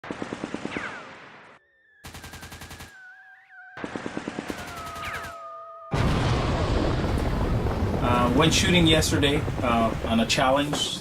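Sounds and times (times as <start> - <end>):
falling whistling tones: 1.6 - 4.0, 4.6 - 6.0
automatic gunfire sound effect: 2.0 - 3.0, 3.8 - 5.4.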